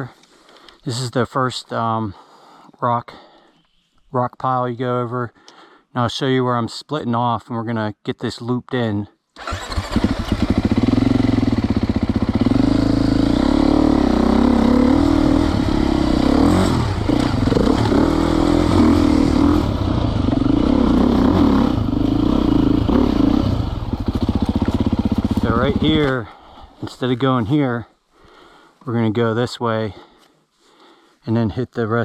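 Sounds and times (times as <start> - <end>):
dirt bike engine revving: 9.4 - 26.2.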